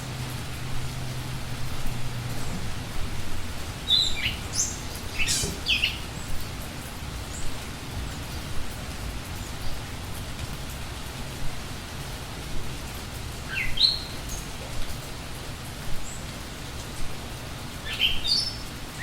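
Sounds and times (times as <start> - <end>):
steady rain falling: 0.0 - 19.0
bird chirping: 3.8 - 6.2.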